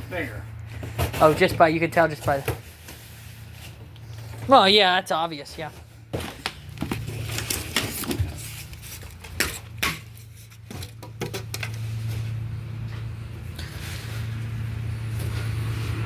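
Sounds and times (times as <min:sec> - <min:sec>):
steady low hum: 0:00.0 - 0:16.0
packaging being pulled and broken: 0:06.2 - 0:11.0.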